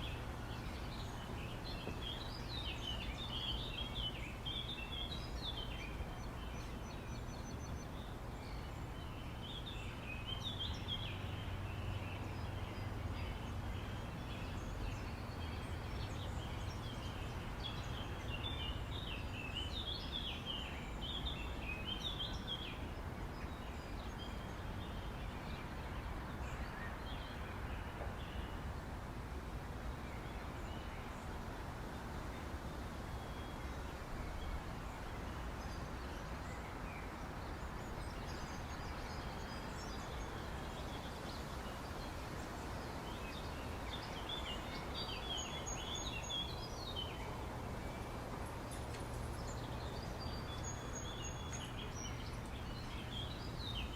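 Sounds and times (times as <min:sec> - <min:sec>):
birds chirping: 0:32.5 - 0:53.9.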